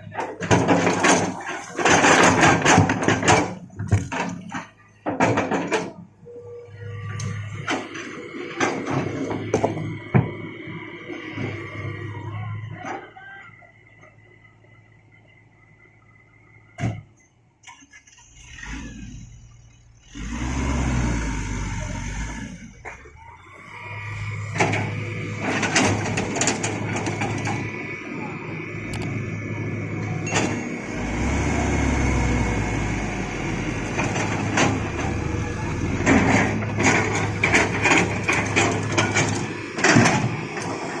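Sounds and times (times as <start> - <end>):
excavator diesel engine rumbling: 0.0 - 41.0.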